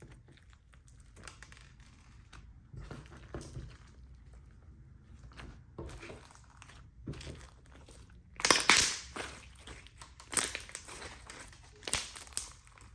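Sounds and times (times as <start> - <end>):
sticky slime clicks and pops: 8.4 - 9.0.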